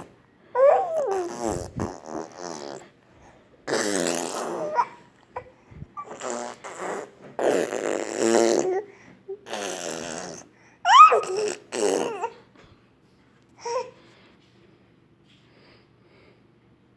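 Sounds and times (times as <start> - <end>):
child babbling: 0.6 - 2.4, 10.9 - 12.4
child making raspberry mouth noises: 0.6 - 3.0, 3.7 - 12.4.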